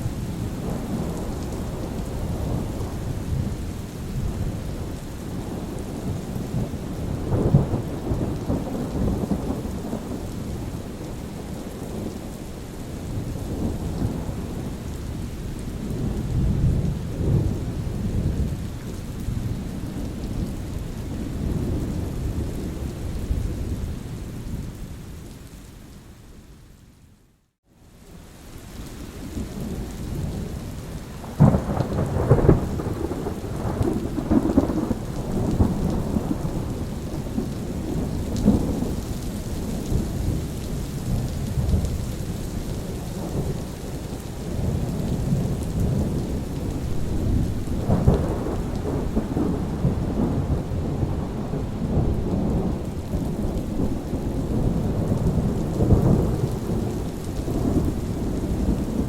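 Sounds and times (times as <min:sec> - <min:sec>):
thunder rumbling: 0:00.0 - 0:12.4, 0:29.2 - 0:59.0
steady rain: 0:00.0 - 0:59.0.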